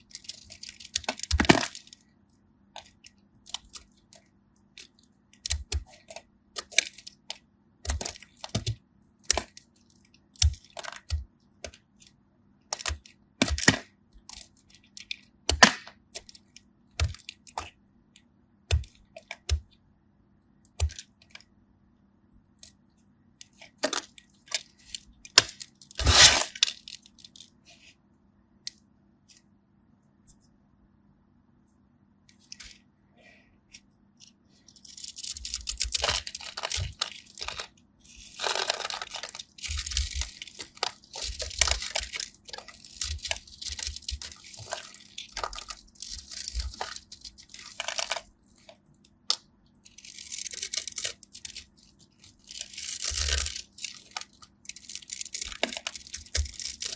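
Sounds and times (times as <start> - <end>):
sand clay cracking: 24.8 - 27.4, 34.9 - 56.9.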